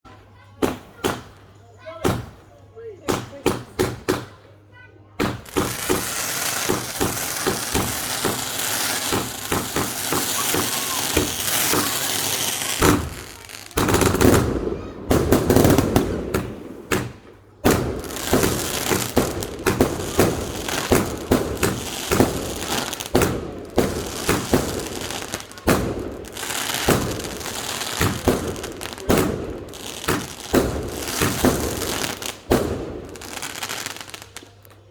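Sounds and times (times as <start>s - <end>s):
fireworks bangs and crackle: 0.6s - 2.5s, 5.2s - 34.8s.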